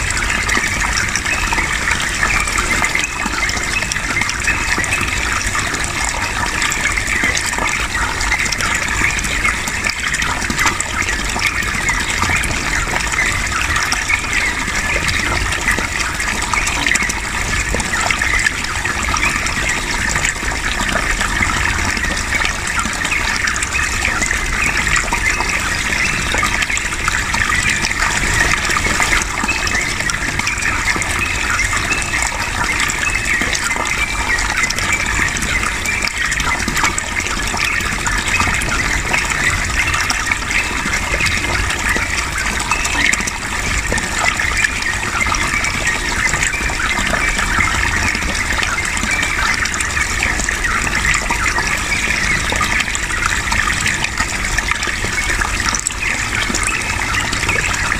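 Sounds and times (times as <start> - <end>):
water gushing: 0.0 - 57.9.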